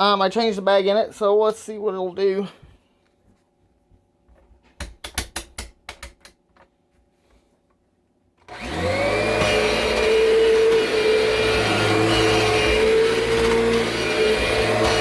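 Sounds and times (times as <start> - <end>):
sharp clicks and knocks: 4.8 - 6.7
vacuum cleaner motor running: 8.5 - 15.0.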